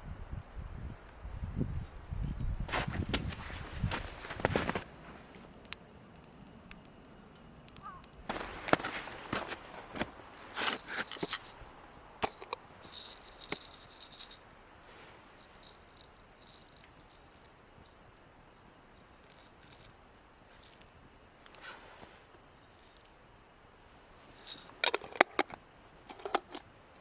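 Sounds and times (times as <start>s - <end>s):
small metal objects clinking: 4.8s - 11.6s, 12.2s - 14.4s, 15.4s - 18.3s, 18.9s - 21.6s, 22.6s - 23.2s, 24.3s - 26.6s.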